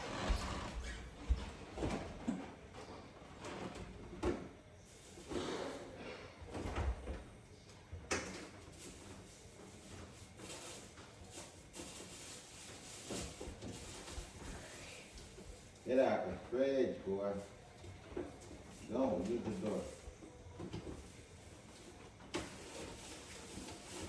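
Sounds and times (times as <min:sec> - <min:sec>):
drawers opening and shutting: 0:00.0 - 0:02.1.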